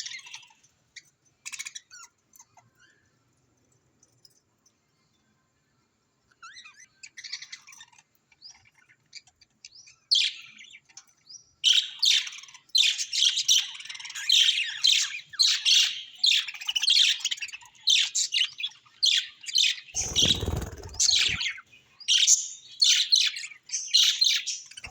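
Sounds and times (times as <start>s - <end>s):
budgerigars chirping and warbling: 20.0s - 21.6s, 23.9s - 24.9s.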